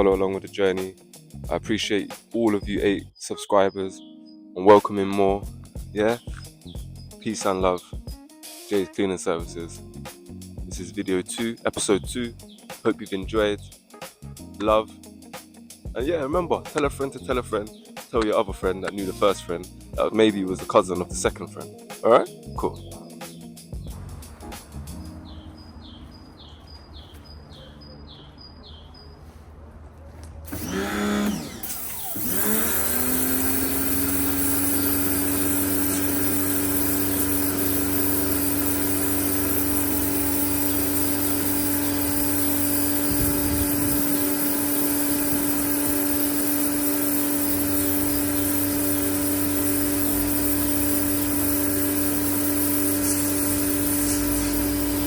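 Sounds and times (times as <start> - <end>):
pressure washer motor humming: 29.3 - 55.0.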